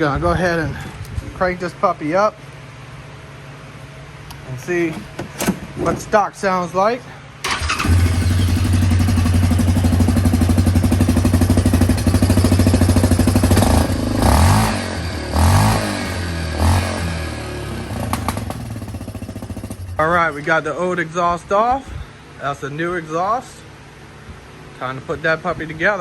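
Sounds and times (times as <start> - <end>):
engine throttle blips: 7.4 - 20.7
atv engine idling: 7.4 - 21.0.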